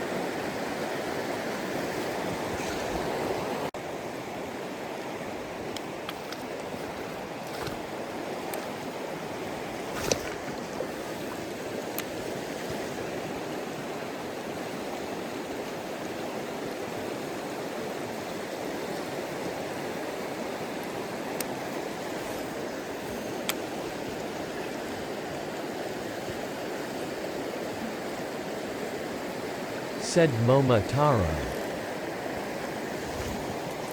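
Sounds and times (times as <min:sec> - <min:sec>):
mountain stream rushing: 0:00.0 - 0:10.1.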